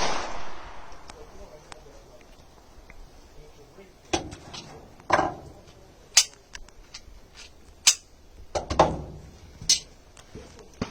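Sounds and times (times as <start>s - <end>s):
pistol shots: 0.0s - 1.2s.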